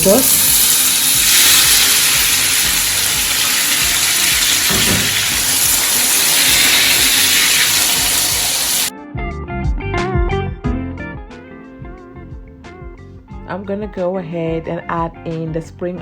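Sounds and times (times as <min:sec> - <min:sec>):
vegetables sizzling in oil: 0:00.0 - 0:08.9.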